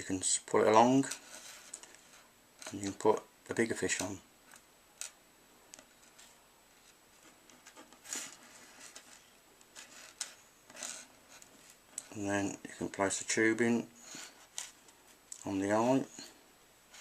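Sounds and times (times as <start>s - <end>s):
scratchy rustles: 1.0s - 2.9s, 5.9s - 12.2s.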